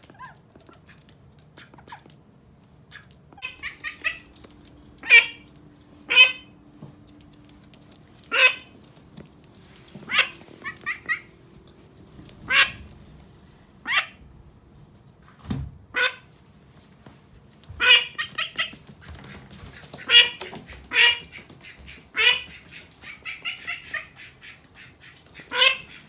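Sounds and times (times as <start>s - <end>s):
duck quacking: 2.9s - 4.4s, 5.0s - 6.5s, 8.3s - 8.7s, 10.1s - 11.3s, 12.5s - 12.9s, 17.8s - 18.8s, 19.7s - 26.0s.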